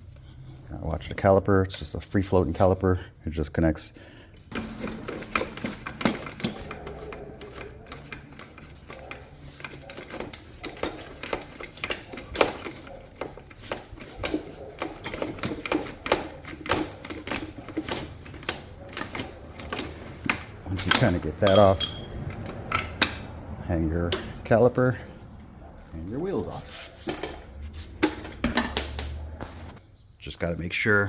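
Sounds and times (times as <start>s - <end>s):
metallic clicks and clinks: 14.2s - 23.2s.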